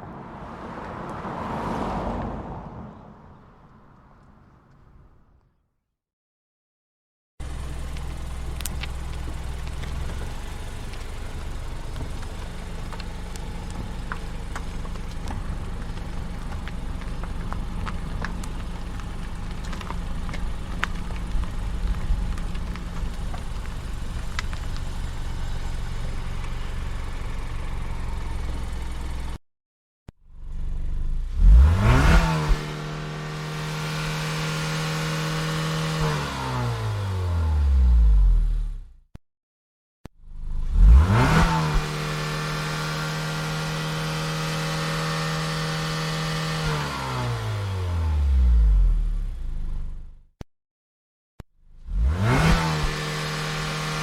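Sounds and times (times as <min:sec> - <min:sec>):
car engine revving: 0:00.0 - 0:03.4, 0:30.4 - 0:38.8, 0:40.4 - 0:50.0, 0:51.8 - 0:54.0
car engine and road rumble: 0:00.0 - 0:05.6, 0:07.4 - 0:29.4, 0:30.2 - 0:39.0, 0:40.2 - 0:50.3, 0:51.6 - 0:54.0.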